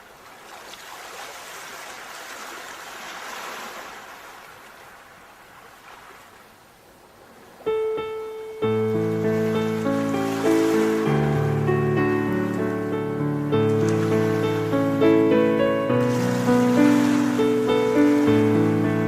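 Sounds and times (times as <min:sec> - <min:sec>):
ocean waves hissing: 0:06.9 - 0:19.0
piano chord with bass: 0:07.7 - 0:19.0.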